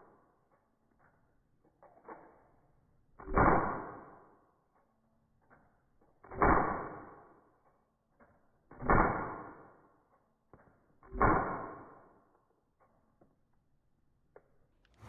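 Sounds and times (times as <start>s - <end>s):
slow motion gunshot bangs: 3.2s - 4.2s, 6.3s - 7.2s, 8.8s - 9.8s, 11.1s - 12.1s.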